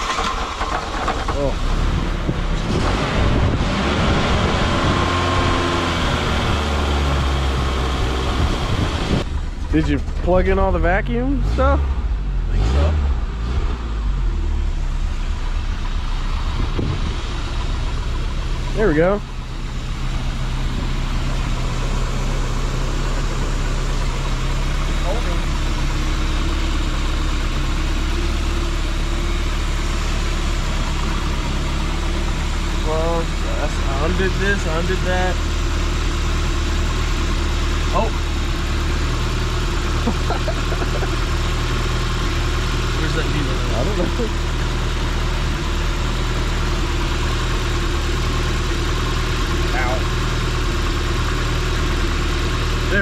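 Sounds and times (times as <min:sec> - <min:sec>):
car engine idling roughly: 0:00.0 - 0:02.6, 0:14.8 - 0:53.0.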